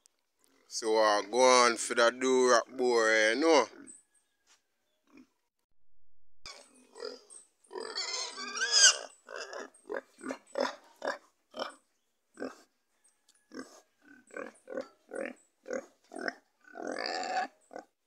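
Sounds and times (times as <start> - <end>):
pig grunting: 6.5 - 11.8, 12.4 - 12.7, 13.5 - 18.0
pig squealing: 6.5 - 11.8, 13.5 - 17.9.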